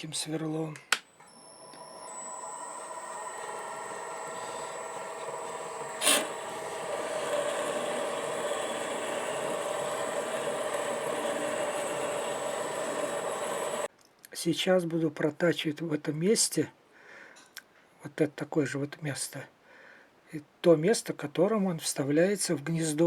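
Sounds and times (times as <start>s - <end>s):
lathe running with a whine: 1.2s - 13.9s.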